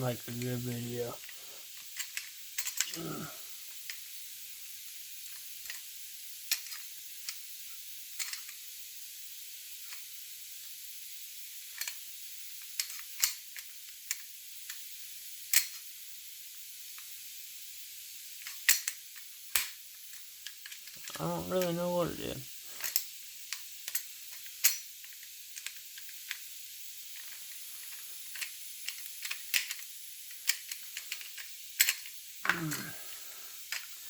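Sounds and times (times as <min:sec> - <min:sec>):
steady background hiss: 0:00.0 - 0:34.0
metal gun parts clicking: 0:01.2 - 0:03.0, 0:12.8 - 0:13.4, 0:18.4 - 0:19.8, 0:22.8 - 0:26.4, 0:27.2 - 0:32.2.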